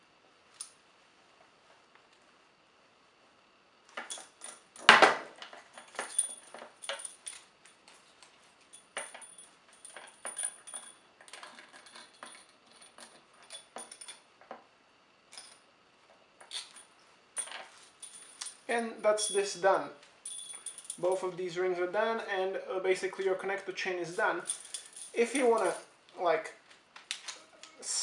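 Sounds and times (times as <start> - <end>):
chain and ring jangling: 5.7 - 7.8, 8.7 - 14.2, 16.4 - 19.6, 20.2 - 21.3, 24.4 - 25.9.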